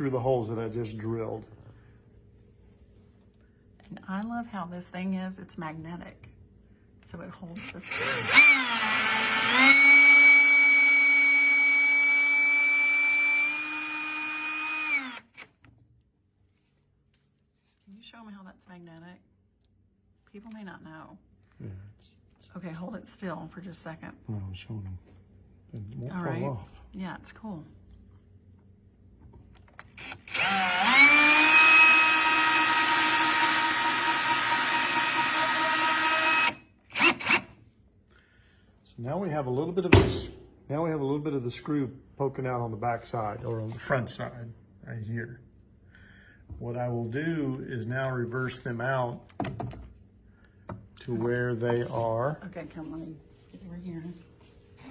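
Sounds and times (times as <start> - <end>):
power drill driving a screw: 7.6 - 15.5, 30.0 - 37.6.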